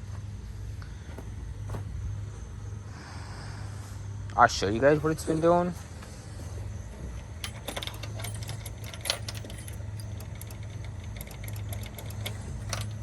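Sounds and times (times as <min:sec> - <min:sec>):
steady low hum: 0:00.0 - 0:13.0
small metallic rattles: 0:04.9 - 0:13.0.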